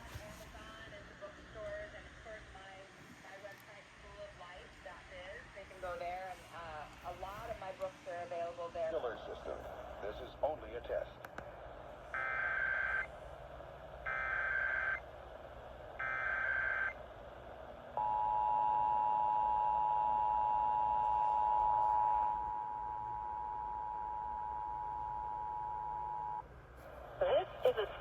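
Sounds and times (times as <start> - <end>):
screeching data tones: 12.2 - 13.1, 14.1 - 15.0, 16.0 - 17.0.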